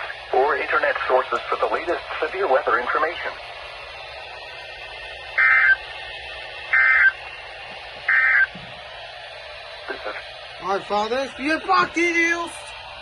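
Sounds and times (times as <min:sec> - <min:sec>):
radio hiss: 0:00.0 - 0:03.6, 0:09.8 - 0:12.7
digital data tone bursts: 0:05.4 - 0:05.8, 0:06.7 - 0:07.2, 0:08.1 - 0:08.5.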